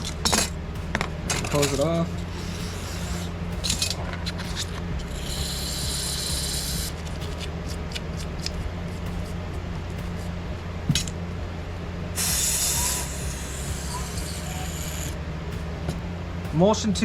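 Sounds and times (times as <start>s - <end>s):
small parts clicking and tapping: 0.0s - 9.4s
steady low hum: 0.0s - 17.0s
aerosol spray hiss: 12.2s - 15.1s.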